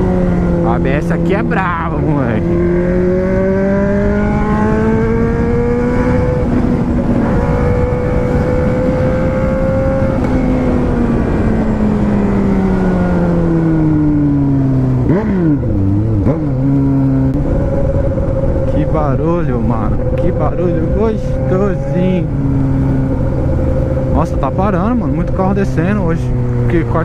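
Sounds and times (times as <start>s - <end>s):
car engine running: 13.4s - 27.0s.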